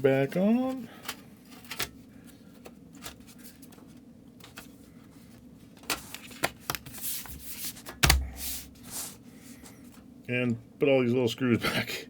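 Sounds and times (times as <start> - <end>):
laptop cover clicks and taps: 7.9 - 8.3.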